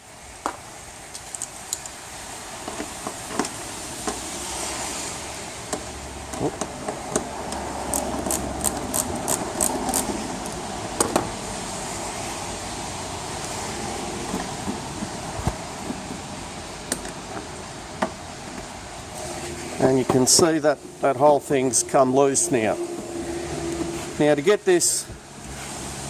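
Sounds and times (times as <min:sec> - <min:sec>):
steady background noise: 0:00.0 - 0:26.0
hand tool metallic clicks: 0:07.1 - 0:11.2.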